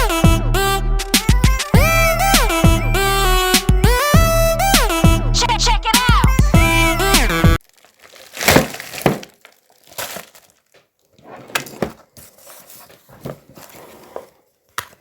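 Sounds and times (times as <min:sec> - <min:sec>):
crinkling handling noises: 0:07.6 - 0:15.0.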